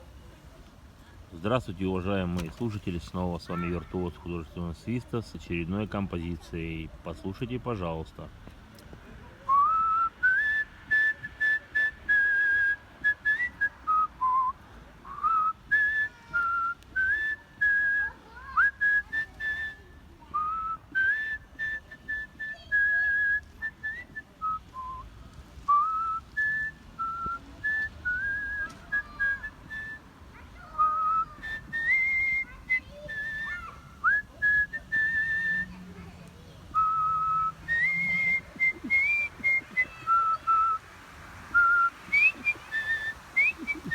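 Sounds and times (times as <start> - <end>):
person whistling a melody: 9.5 - 25.1, 25.7 - 30.1, 30.8 - 35.7, 36.8 - 40.8, 41.5 - 43.9.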